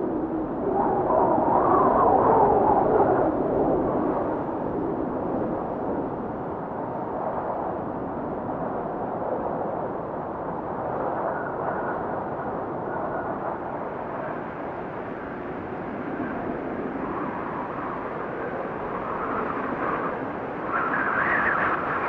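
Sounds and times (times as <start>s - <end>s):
blizzard wind gusting: 0.0s - 22.0s
faint wind whistle: 16.1s - 22.0s.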